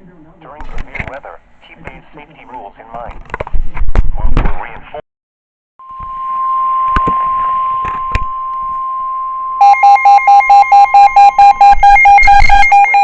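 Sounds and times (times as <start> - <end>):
radio hiss: 0.0 - 3.1
pulsed electronic alarm beeping: 5.8 - 13.0
steady high alarm tone: 5.8 - 13.0.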